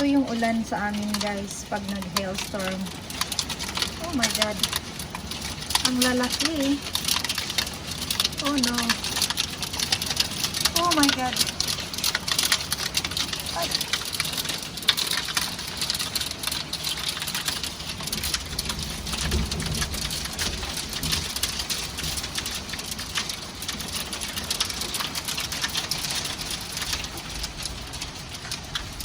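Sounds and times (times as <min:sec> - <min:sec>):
hail and heavy rain pelting: 0:00.0 - 0:29.0.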